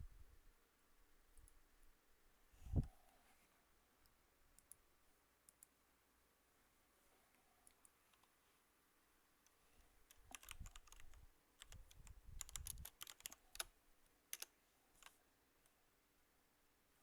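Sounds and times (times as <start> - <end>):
typing on computer keyboard: 10.1 - 13.7, 14.3 - 15.1.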